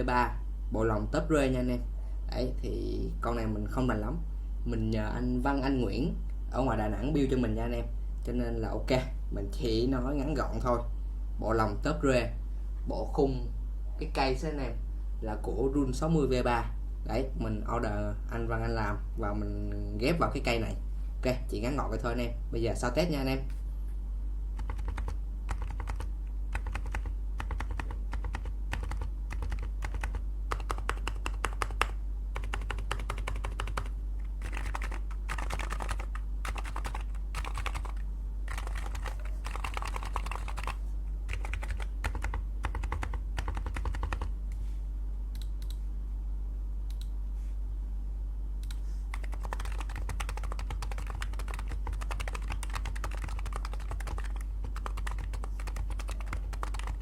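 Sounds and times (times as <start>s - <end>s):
faint low hum: 0.0s - 57.0s
keyboard typing: 24.6s - 44.3s, 48.6s - 57.0s.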